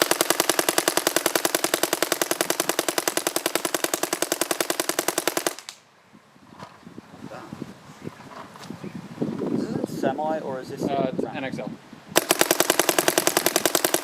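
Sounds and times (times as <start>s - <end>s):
paintball marker rapid firing: 0.0s - 5.8s, 12.2s - 14.0s.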